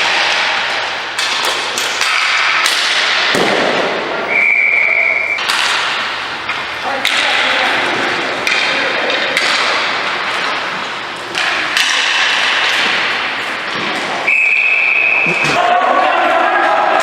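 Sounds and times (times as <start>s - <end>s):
ball hockey game noise: 0.0s - 17.0s
steady high whistle: 4.3s - 5.4s, 14.2s - 15.6s.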